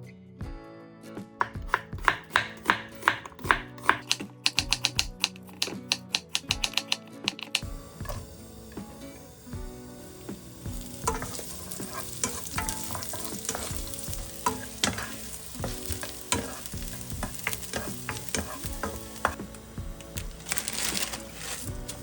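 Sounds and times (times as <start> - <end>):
onion sizzling in a pan: 1.5 - 22.0
utensil scraping a pan: 5.4 - 22.0.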